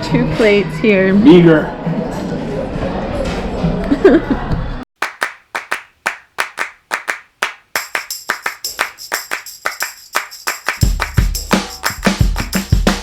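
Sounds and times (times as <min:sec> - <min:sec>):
rhythmic hand claps: 0:05.0 - 0:13.0
jingling tambourine: 0:07.8 - 0:13.0
deep bass beat: 0:10.8 - 0:13.0.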